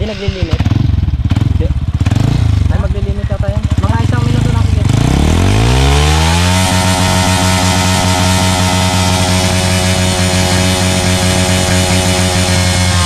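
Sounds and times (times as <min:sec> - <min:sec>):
motorcycle engine revving high: 0:00.0 - 0:13.0.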